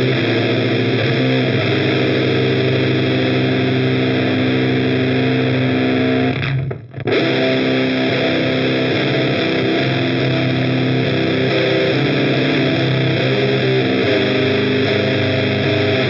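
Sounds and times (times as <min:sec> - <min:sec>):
fuzz electric guitar chords: 0:00.0 - 0:16.0.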